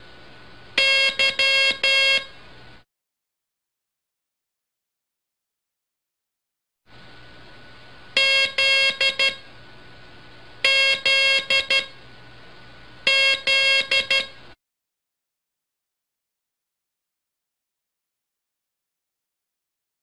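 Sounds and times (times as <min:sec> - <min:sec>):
morse code beeps: 0:00.8 - 0:02.3, 0:08.2 - 0:09.4, 0:10.6 - 0:11.9, 0:13.1 - 0:14.4.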